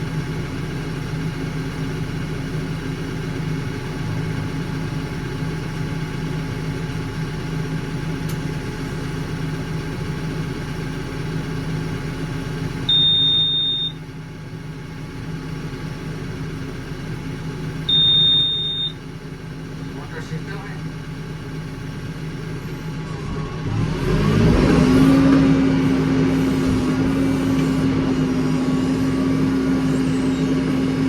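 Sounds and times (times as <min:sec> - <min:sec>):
heavy vehicle engine idling: 0:00.0 - 0:31.0
high electronic beeps: 0:17.9 - 0:19.0.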